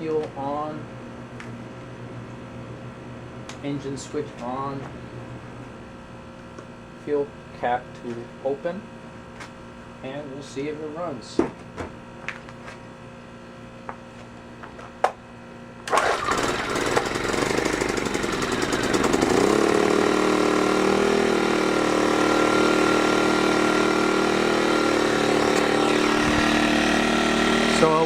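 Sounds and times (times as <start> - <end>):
small generator engine running: 15.8 - 28.0.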